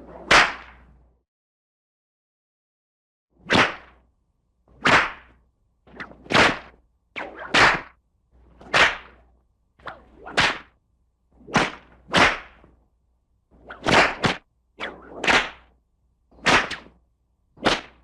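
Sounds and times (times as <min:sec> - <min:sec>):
whip cracks: 0:00.1 - 0:00.9, 0:03.4 - 0:04.0, 0:04.8 - 0:08.0, 0:08.6 - 0:09.2, 0:09.8 - 0:10.8, 0:11.4 - 0:12.7, 0:13.6 - 0:15.7, 0:16.4 - 0:17.0, 0:17.6 - 0:18.0.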